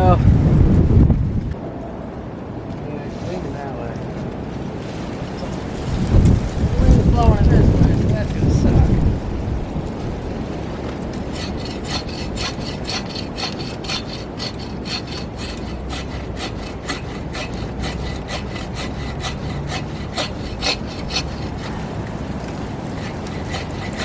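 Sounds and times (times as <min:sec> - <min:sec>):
wind rumble: 0:00.0 - 0:02.7, 0:04.5 - 0:24.0
hand saw cutting branch: 0:10.8 - 0:24.0.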